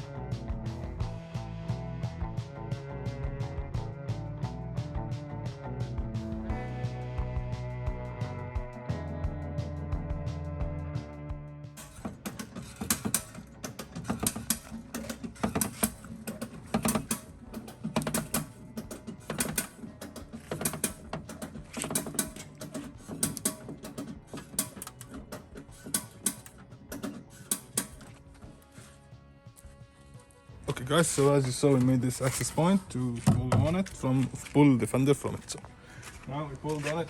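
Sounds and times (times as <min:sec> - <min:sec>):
metallic clicks and knocks: 0:11.8 - 0:28.8.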